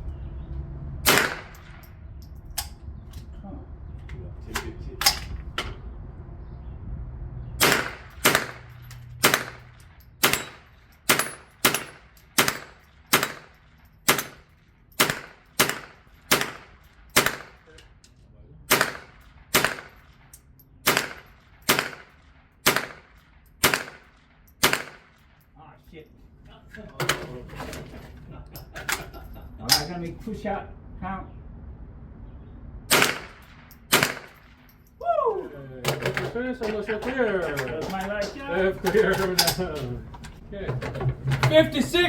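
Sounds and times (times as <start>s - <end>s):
rifle shots hitting steel targets: 1.0s - 2.8s, 4.5s - 5.6s, 7.6s - 18.0s, 18.7s - 25.6s, 32.9s - 34.9s.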